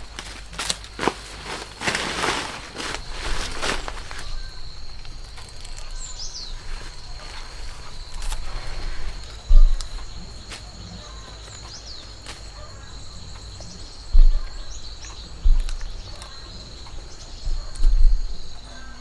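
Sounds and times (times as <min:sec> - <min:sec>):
insects droning: 0:00.0 - 0:19.0
bird chirps: 0:04.0 - 0:19.0
loud low thumps: 0:09.5 - 0:10.0, 0:14.1 - 0:16.0, 0:17.4 - 0:18.4.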